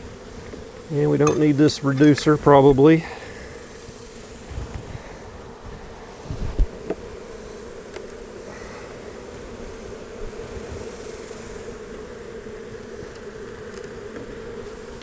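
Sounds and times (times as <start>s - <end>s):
honey bees buzzing: 0.0s - 15.0s
sharp knock: 1.3s - 1.6s.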